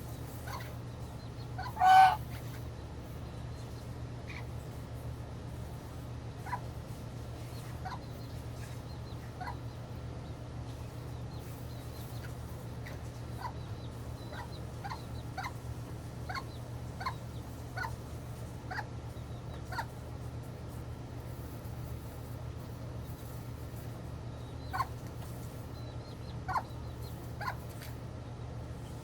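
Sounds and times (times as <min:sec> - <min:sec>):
poultry calling: 0:00.0 - 0:02.7, 0:06.4 - 0:06.8, 0:09.2 - 0:09.8, 0:11.8 - 0:15.6, 0:16.2 - 0:18.0, 0:18.7 - 0:18.9, 0:19.5 - 0:20.0, 0:24.6 - 0:25.1, 0:26.1 - 0:27.9
steady low hum: 0:00.0 - 0:29.0.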